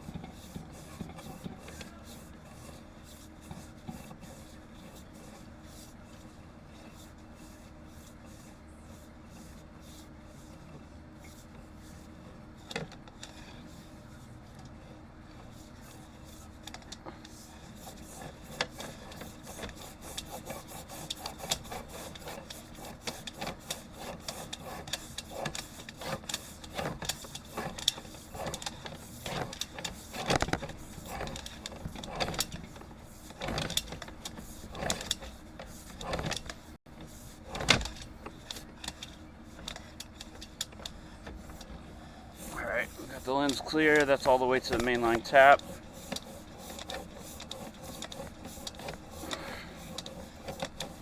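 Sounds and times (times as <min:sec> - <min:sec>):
low background hum: 0:00.0 - 0:51.0
camera scraping through pipe: 0:17.3 - 0:51.0.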